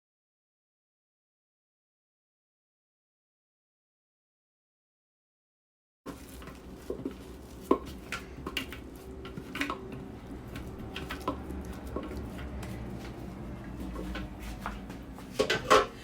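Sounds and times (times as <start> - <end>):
utensils and dishes clinking: 6.1 - 16.0.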